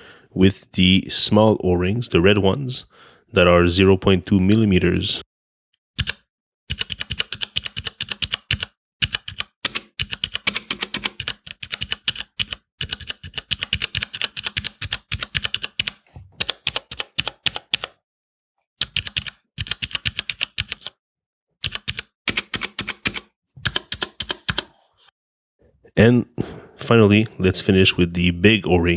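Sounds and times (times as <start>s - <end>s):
mechanical keyboard typing: 6.0s - 18.0s, 18.8s - 20.9s, 21.6s - 24.7s.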